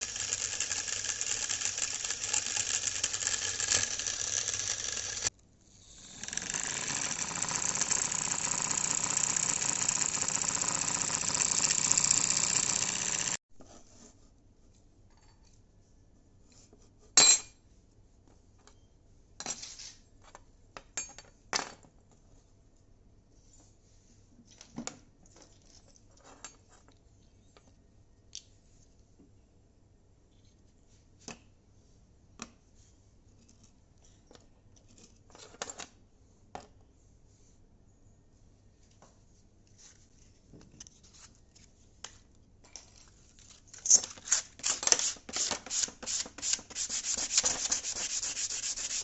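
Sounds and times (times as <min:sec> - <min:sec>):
electric motor rattling buzz: 0:00.0 - 0:05.3, 0:05.9 - 0:13.4.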